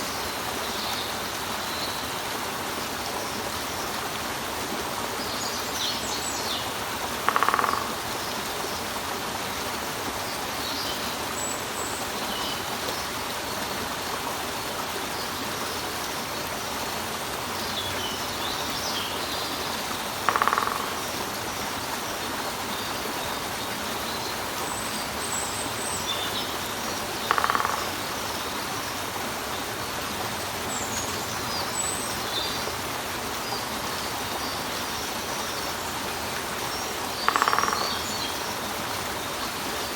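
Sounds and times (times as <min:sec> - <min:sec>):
water falling over rock: 0:06.8 - 0:08.2, 0:19.7 - 0:23.2, 0:27.0 - 0:28.7, 0:37.2 - 0:38.2
woodpecker call: 0:07.2 - 0:08.1, 0:20.1 - 0:21.2, 0:27.1 - 0:28.2, 0:37.2 - 0:38.3.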